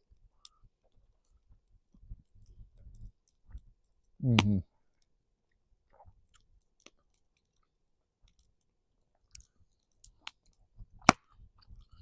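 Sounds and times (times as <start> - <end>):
close-up chewing: 0.0 - 12.0
mouth clicks: 4.2 - 4.7.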